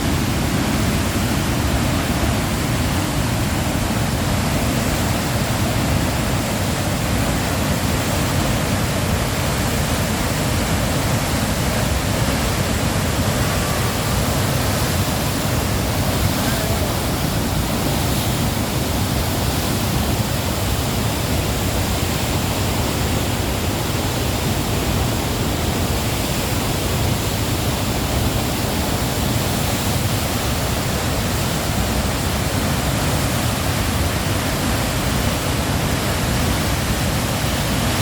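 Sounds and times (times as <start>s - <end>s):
waterfall rushing: 0.0s - 38.0s.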